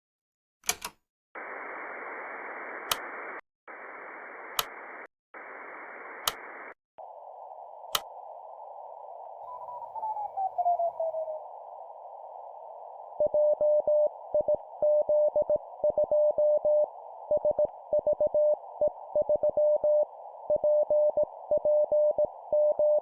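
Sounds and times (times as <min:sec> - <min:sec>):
sharp clicks: 0:00.6 - 0:01.0, 0:02.8 - 0:03.2, 0:04.5 - 0:05.0, 0:06.2 - 0:06.8, 0:07.9 - 0:08.1
radio receiver hiss: 0:01.4 - 0:22.9.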